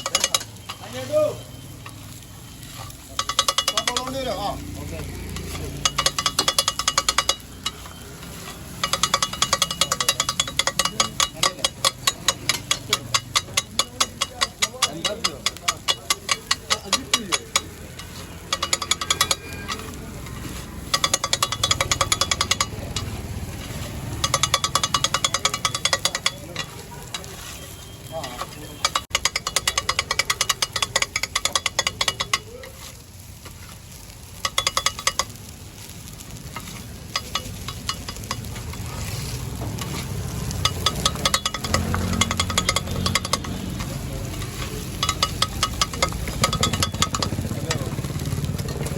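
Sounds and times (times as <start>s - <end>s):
food sizzling: 0.0s - 48.9s
metal blades clanging on griddle: 0.0s - 48.9s.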